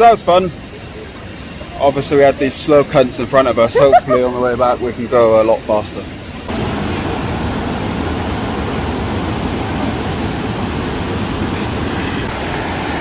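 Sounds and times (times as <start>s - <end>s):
waterfall rushing: 6.5s - 13.0s.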